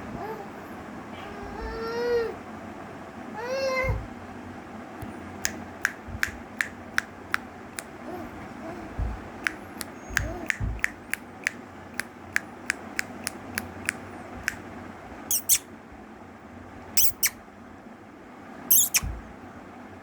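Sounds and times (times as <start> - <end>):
high-pitched sneezes: 17.0 - 17.4.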